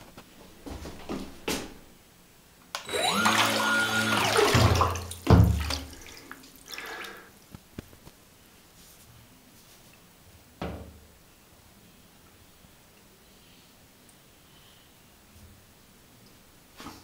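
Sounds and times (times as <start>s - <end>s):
small electric motor whining: 2.8s - 4.7s
water churning: 2.9s - 7.2s
burst of water noise: 3.2s - 7.2s.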